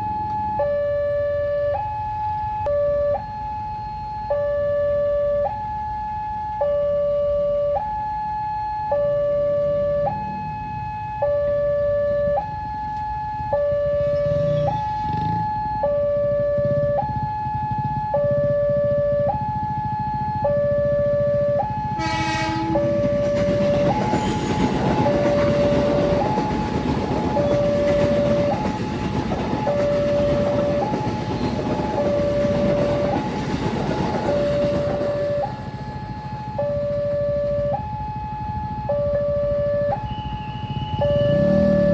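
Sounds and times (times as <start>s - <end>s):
level crossing alarm: 0.0s - 41.9s
train passing on rails: 21.8s - 38.8s, 40.0s - 41.9s
train horn blast: 22.0s - 23.2s.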